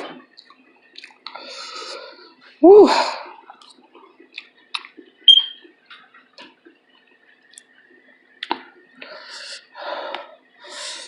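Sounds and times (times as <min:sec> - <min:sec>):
eating clicks and smacks: 0:00.3 - 0:01.4, 0:03.5 - 0:05.3, 0:07.4 - 0:07.8, 0:08.4 - 0:08.8
brief squeak: 0:05.3 - 0:05.6.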